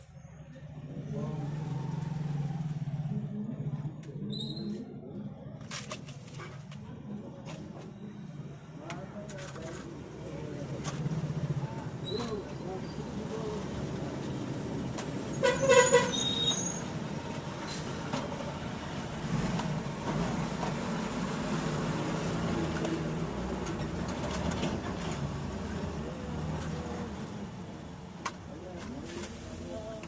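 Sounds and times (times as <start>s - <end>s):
road traffic noise: 0.0s - 30.0s
vehicle horn honk: 15.4s - 16.6s.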